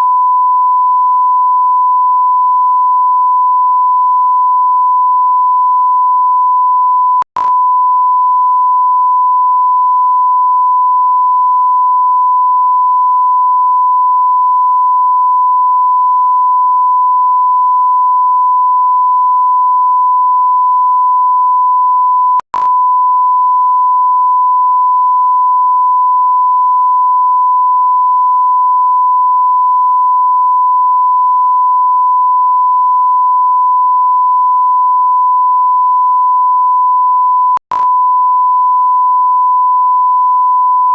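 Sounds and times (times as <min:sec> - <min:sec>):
click: 0:07.2 - 0:07.6, 0:22.5 - 0:22.8, 0:37.5 - 0:38.0.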